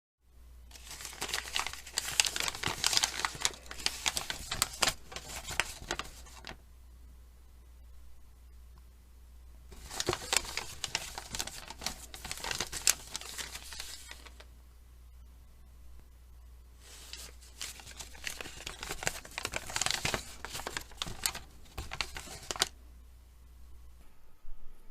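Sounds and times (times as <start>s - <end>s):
paper crumpling: 0.7s - 6.6s, 9.7s - 14.5s, 16.8s - 22.8s.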